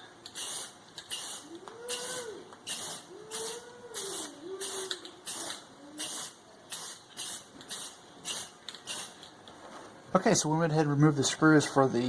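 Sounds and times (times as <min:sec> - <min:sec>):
spray paint can spraying: 0:00.2 - 0:09.3.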